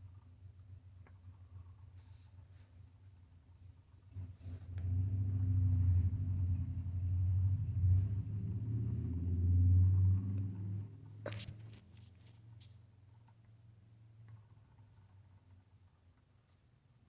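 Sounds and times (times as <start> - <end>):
low rumble: 4.5 - 11.0.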